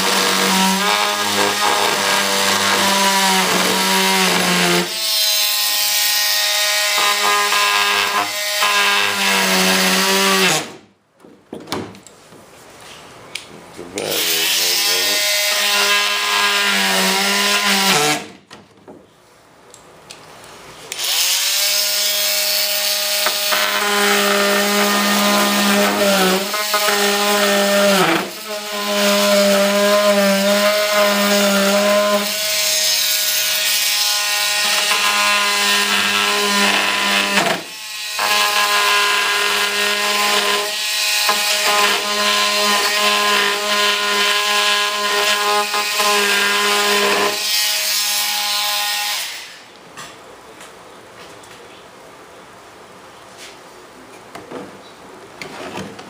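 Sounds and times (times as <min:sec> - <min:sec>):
electric power tool grinding: 0:00.0 - 0:10.8, 0:20.9 - 0:48.6.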